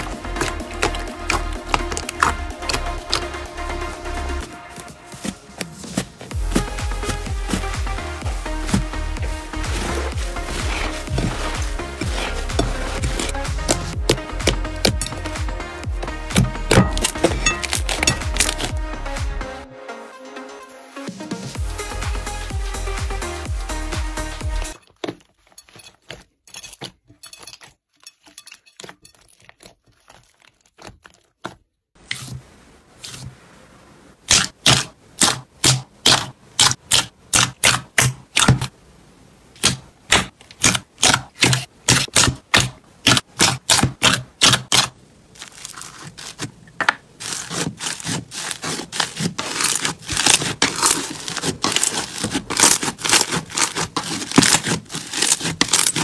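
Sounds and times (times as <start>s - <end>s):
crunchy slime crackling: 0.0s - 18.8s, 27.5s - 31.8s, 39.6s - 56.0s.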